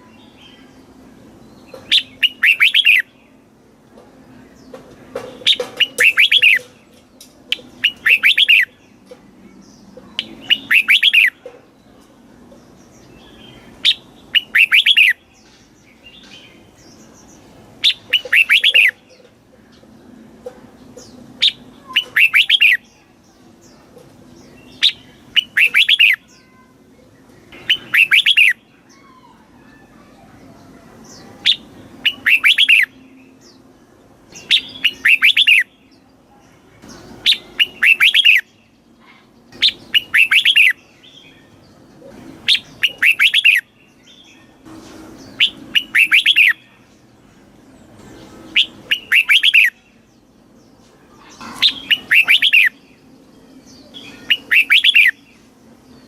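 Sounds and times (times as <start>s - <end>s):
bulbul singing whistled notes: 1.9s - 3.1s, 34.4s - 35.7s, 45.3s - 46.7s, 48.5s - 49.8s, 51.7s - 52.8s, 54.0s - 55.2s.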